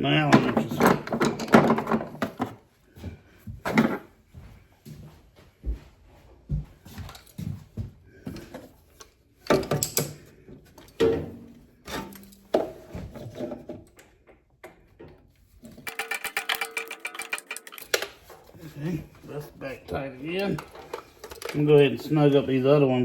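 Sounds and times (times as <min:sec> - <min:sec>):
metal hand tools clinking: 0:11.9 - 0:12.5, 0:15.7 - 0:18.8.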